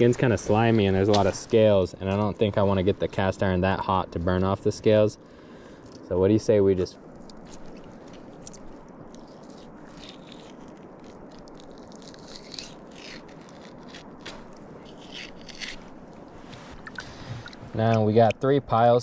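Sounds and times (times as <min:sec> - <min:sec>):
steady hiss: 0:00.0 - 0:11.5.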